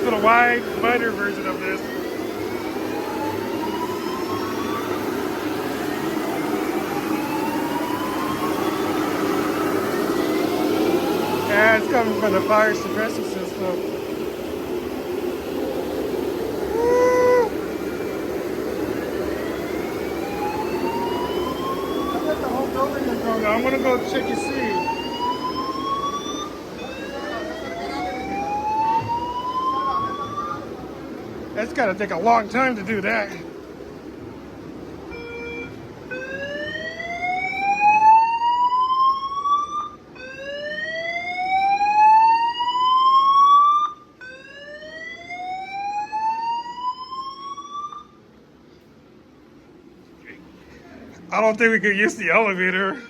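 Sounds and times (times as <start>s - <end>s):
faint rising tone: 0.0s - 30.8s.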